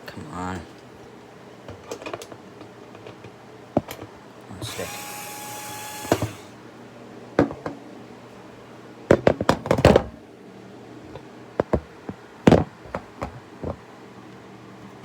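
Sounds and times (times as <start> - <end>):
knocks and taps on appliance: 7.4 - 7.8, 9.1 - 10.1, 11.6 - 13.8.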